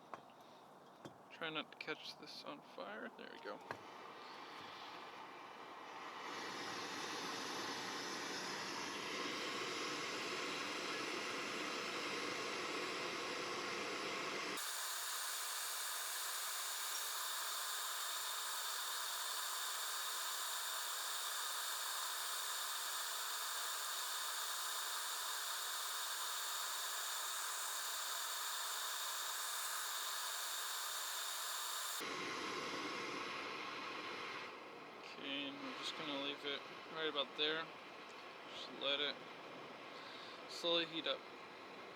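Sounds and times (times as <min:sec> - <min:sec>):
stove burner hissing: 0:04.0 - 0:37.6
low burner rumble: 0:05.4 - 0:38.0.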